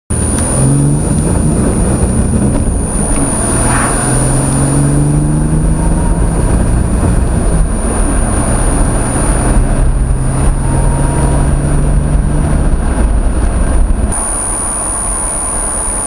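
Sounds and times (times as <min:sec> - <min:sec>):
car engine misfiring under load: 0:00.1 - 0:16.0
thin high whine: 0:00.2 - 0:06.6, 0:14.1 - 0:16.0.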